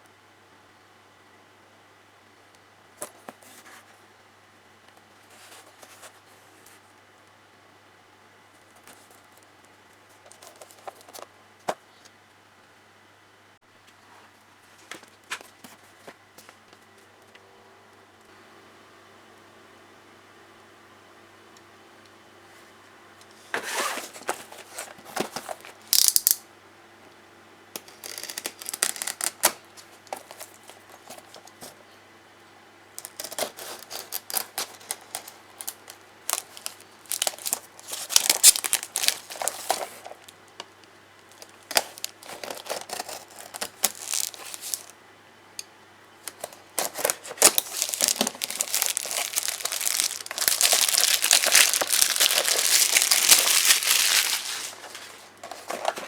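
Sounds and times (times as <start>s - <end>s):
plastic packaging crinkling and tearing: 23.6s - 26.4s, 27.8s - 31.7s, 33.0s - 40.6s, 41.2s - 44.9s, 46.2s - 56.0s.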